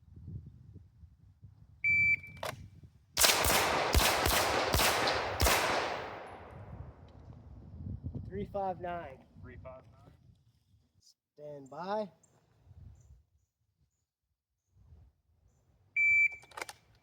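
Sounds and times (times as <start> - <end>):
pistol shots: 3.2 - 7.0.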